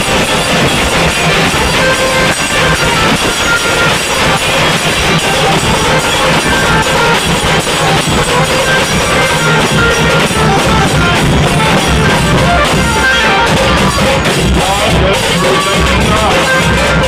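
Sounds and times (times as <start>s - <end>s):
music with drums and plucked strings: 0.0s - 17.0s.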